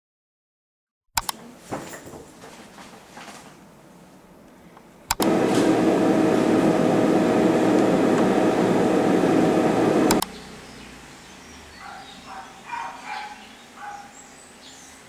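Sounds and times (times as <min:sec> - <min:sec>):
switch click: 0:05.1 - 0:05.8
loud machine hum with rush: 0:05.2 - 0:10.2.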